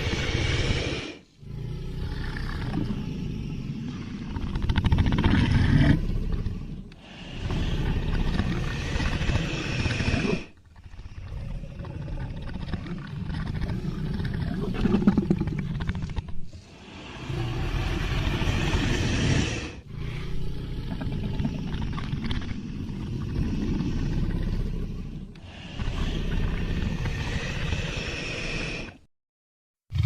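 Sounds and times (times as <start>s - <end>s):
deep rasping dragon growls: 0.0s - 29.1s.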